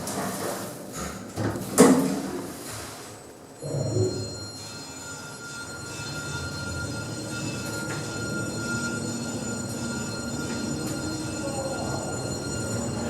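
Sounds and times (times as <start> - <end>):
lift running hum: 0.0 - 13.0
high whine of drive: 4.2 - 13.0.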